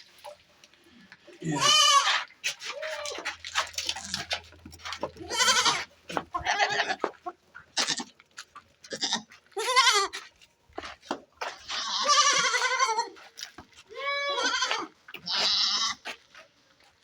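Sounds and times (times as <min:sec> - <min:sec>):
goats bleating: 0:01.4 - 0:04.4, 0:05.1 - 0:07.2, 0:08.9 - 0:10.2, 0:11.6 - 0:13.2, 0:13.9 - 0:16.1.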